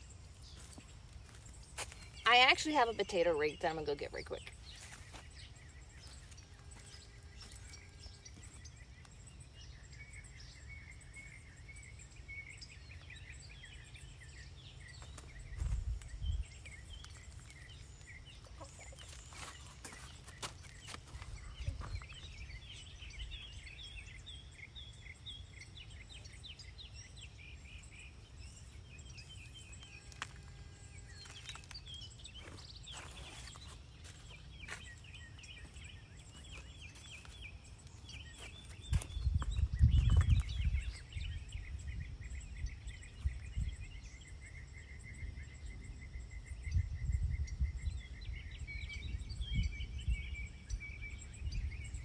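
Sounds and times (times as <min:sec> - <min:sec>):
insects chirping: 0:00.0 - 0:08.0
bird calls: 0:00.0 - 0:09.0, 0:09.7 - 0:52.0.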